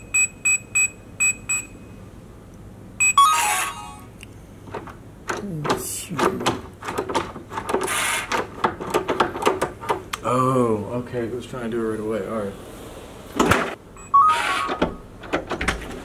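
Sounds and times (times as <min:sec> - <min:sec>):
keypad beeps: 0:00.0 - 0:01.8, 0:03.0 - 0:04.0, 0:14.0 - 0:14.7.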